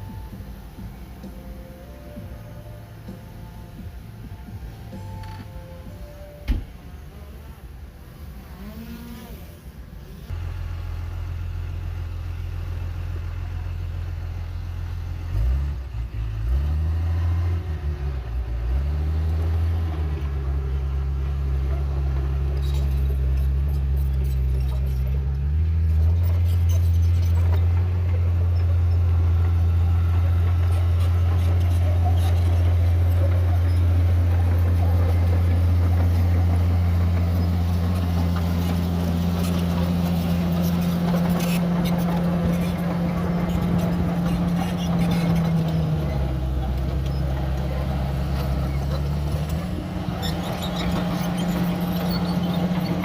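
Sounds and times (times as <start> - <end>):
heavy diesel engine revving: 10.3 - 53.0.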